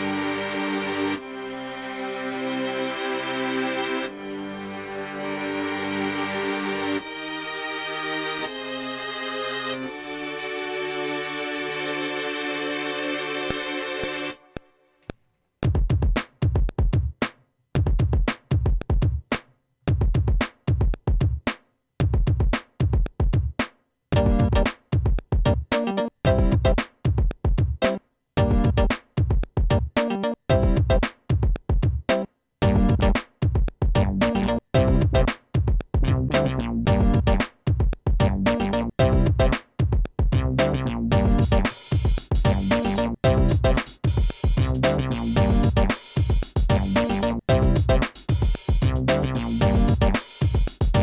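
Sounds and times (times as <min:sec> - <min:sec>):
drum machine beat: 0:15.6 - 0:51.0
synth chords and bass: 0:24.2 - 0:24.7, 0:26.3 - 0:26.8, 0:28.4 - 0:28.9, 0:30.1 - 0:31.0, 0:32.6 - 0:33.2, 0:34.0 - 0:35.3, 0:36.0 - 0:37.5, 0:38.2 - 0:39.6, 0:40.4 - 0:41.7, 0:42.5 - 0:43.8, 0:44.6 - 0:46.0, 0:46.7 - 0:48.0, 0:48.8 - 0:50.2.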